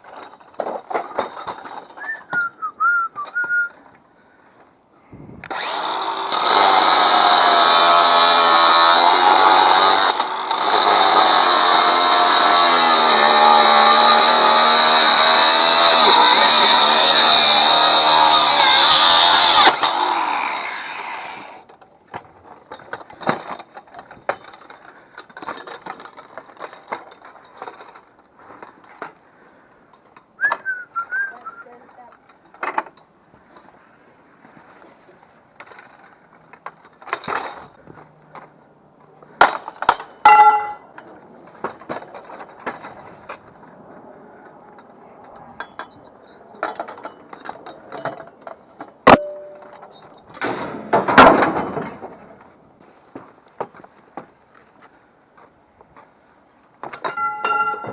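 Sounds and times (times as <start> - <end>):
scrap metal knocks and clinks: 0.0 - 2.1, 22.5 - 29.1, 57.0 - 57.9
ringing metal clang: 40.0 - 40.9, 49.1 - 50.0, 57.1 - 57.9.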